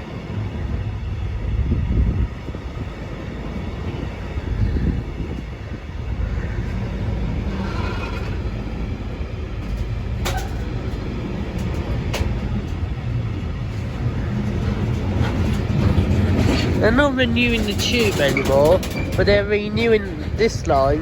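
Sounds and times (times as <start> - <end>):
diesel locomotive engine rumbling: 0.0 - 21.0.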